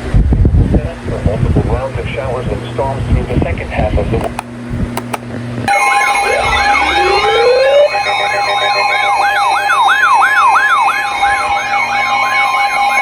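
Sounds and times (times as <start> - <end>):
electronic siren wailing: 5.7 - 13.0
two-tone alarm: 5.7 - 13.0.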